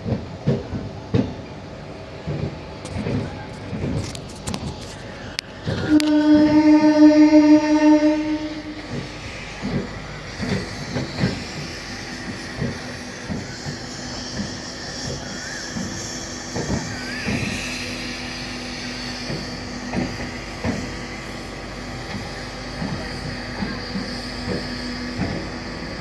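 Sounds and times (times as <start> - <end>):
train horn blast: 5.7 - 9.0
train wheels clacking over rail joints: 8.7 - 26.0.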